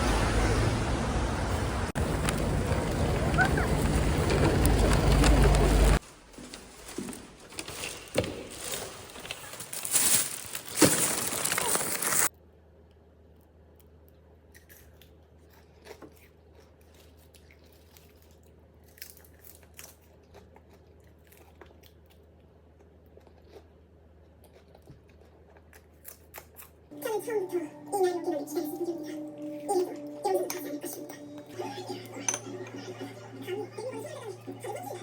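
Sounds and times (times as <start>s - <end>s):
crunching and crinkling handling: 2.0s - 12.3s
faint hum: 26.9s - 35.0s.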